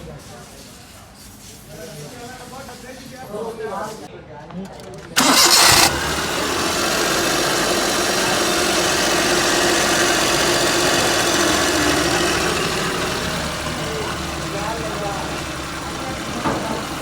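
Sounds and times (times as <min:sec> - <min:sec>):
car engine idling: 0:05.2 - 0:17.0.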